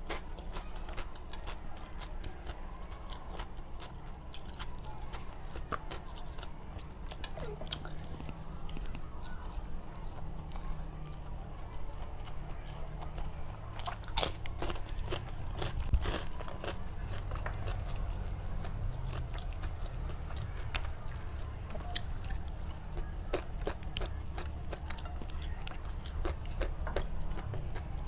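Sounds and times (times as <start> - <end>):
chewing and mouth smacks: 0.0 - 28.0
steady low hum: 0.0 - 28.0.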